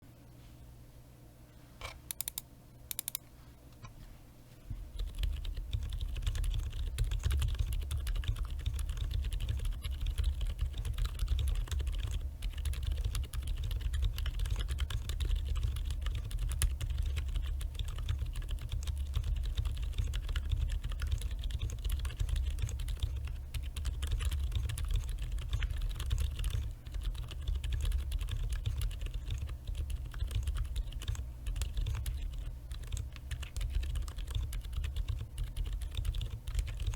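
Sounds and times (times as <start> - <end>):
muted mechanical keyboard typing: 2.1 - 3.2, 4.9 - 36.9.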